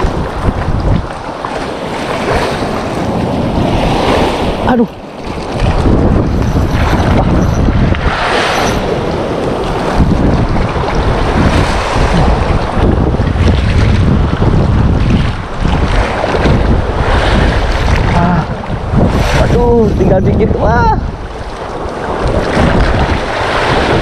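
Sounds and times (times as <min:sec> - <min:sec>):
sea waves on shore: 0:00.0 - 0:24.0
wind buffeting microphone: 0:00.0 - 0:24.0.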